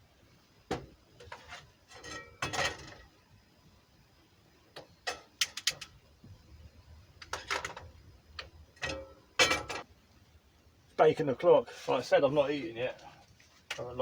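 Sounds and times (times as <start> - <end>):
kitchen items clinking and knocking: 7.3 - 7.9, 8.8 - 9.8.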